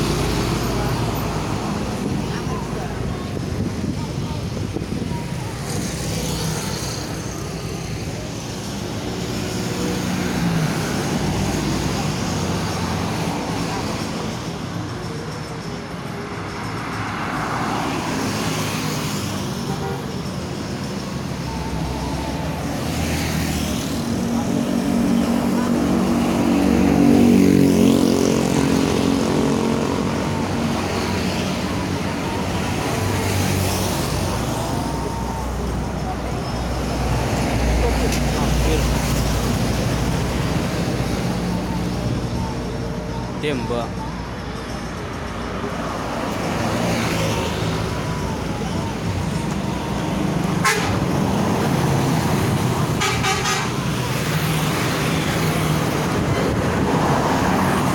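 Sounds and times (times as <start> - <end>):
bus engine running: 0.0 - 16.4
engine running amid traffic: 0.0 - 57.9
road noise: 0.0 - 57.9
bus horn deep blast: 50.6 - 51.2, 53.0 - 53.8.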